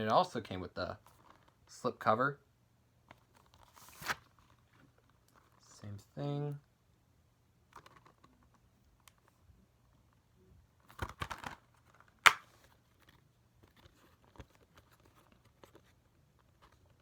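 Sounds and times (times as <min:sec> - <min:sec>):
plastic cases rustling and scraping: 0:01.0 - 0:01.6, 0:07.7 - 0:09.4, 0:10.8 - 0:17.0.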